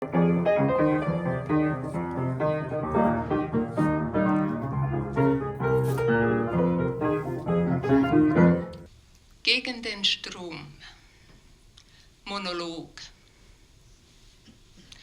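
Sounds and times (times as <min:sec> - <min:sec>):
piano playing: 0:00.0 - 0:08.9.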